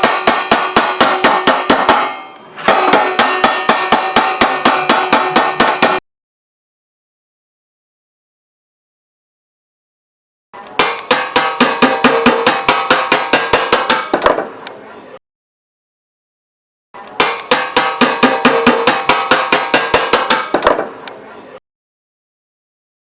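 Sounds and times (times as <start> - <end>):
iron plate struck rapidly: 0.0 - 6.0, 10.8 - 14.6, 17.2 - 21.0.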